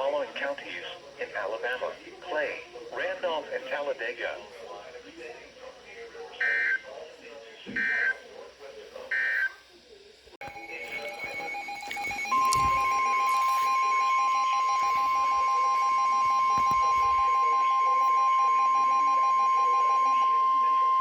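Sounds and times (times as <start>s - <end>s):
steady warning alarm tone: 6.4s - 6.9s, 7.8s - 8.3s, 9.1s - 9.6s, 10.4s - 21.0s
rapid pulsing beep: 10.5s - 21.0s.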